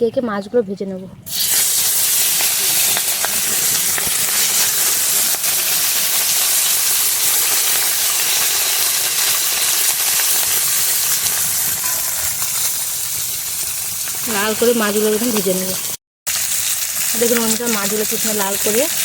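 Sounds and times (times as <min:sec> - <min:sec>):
fish sizzling in hot oil: 0:01.3 - 0:19.0.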